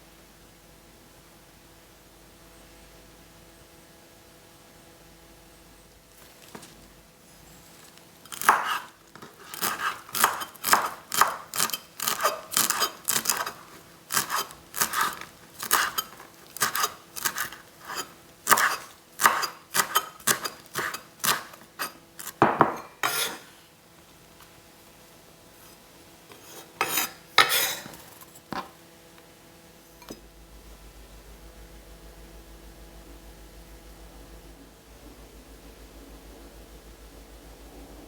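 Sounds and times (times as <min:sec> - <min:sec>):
utensil scraping against a dish: 0:08.2 - 0:23.6, 0:25.6 - 0:28.6.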